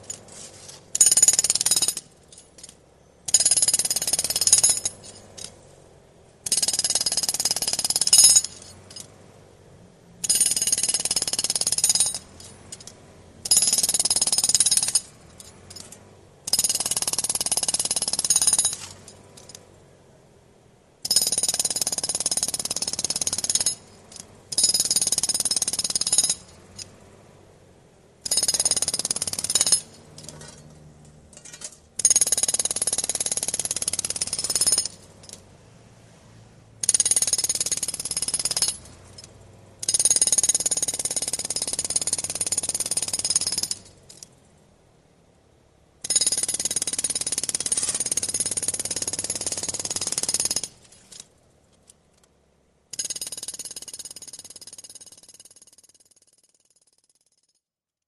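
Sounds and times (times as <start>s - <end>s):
road drill hammering: 0.9s - 5.5s, 6.4s - 9.1s, 10.2s - 19.6s, 21.0s - 26.9s, 28.2s - 30.6s, 31.4s - 35.4s, 36.8s - 44.2s, 46.0s - 50.8s, 52.9s - 55.8s.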